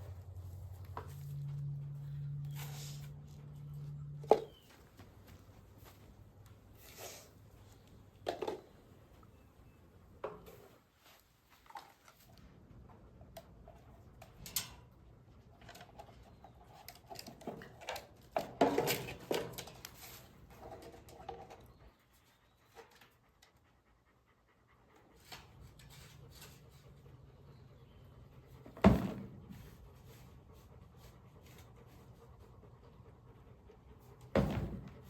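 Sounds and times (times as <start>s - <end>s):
dog panting: 21.4s - 28.8s, 29.4s - 34.4s.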